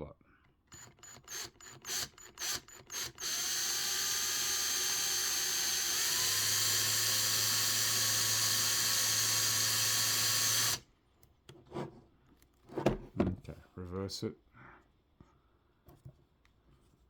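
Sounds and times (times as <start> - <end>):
electric drill whining: 0.7 - 10.8.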